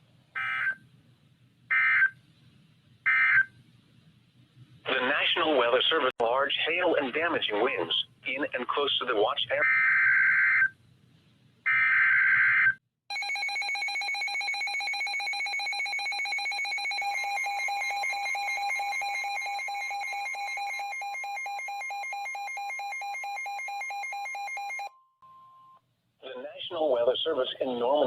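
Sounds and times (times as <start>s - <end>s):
rapid trilling electronic alarm: 11.7s - 24.9s
steady warning tone: 13.1s - 25.4s.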